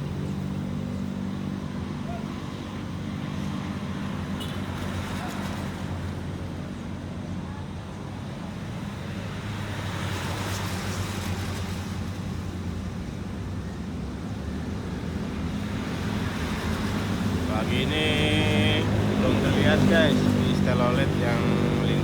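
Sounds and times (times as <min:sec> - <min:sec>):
road traffic: 0:00.0 - 0:22.0
vehicle passing: 0:15.4 - 0:22.0.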